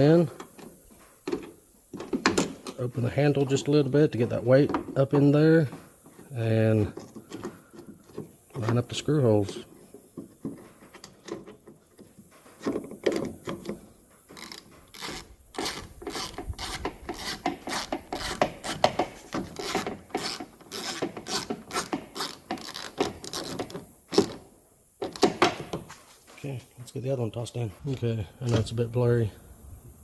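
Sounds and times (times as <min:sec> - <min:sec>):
metal scraping and rubbing: 0:00.0 - 0:23.8.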